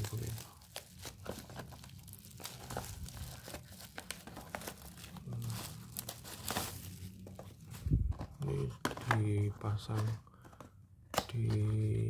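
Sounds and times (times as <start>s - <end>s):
packaging crinkling and tearing: 0.0s - 9.1s.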